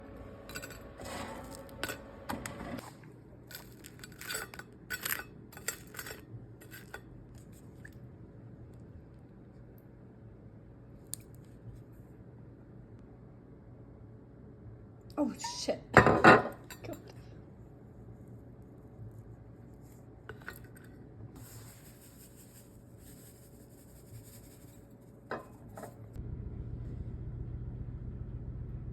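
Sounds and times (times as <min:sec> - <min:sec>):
low steady hum: 0:00.0 - 0:28.9
kitchenware rubbing or scraping: 0:00.4 - 0:07.6, 0:20.3 - 0:26.0
kitchenware clinking: 0:00.5 - 0:02.0, 0:03.5 - 0:07.1, 0:16.0 - 0:17.2, 0:25.3 - 0:26.0
dishes and utensils clattering: 0:00.5 - 0:02.9, 0:03.5 - 0:07.1, 0:16.0 - 0:17.2.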